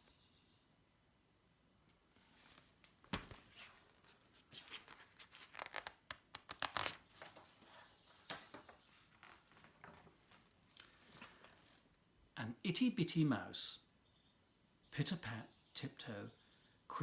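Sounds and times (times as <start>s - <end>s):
paper rustling and crinkling: 2.2s - 11.9s.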